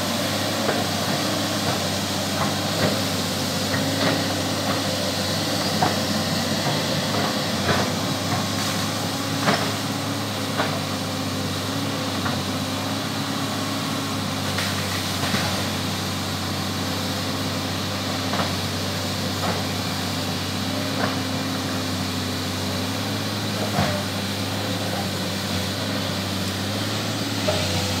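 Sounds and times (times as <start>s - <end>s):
excavator engine running: 0.0s - 28.0s.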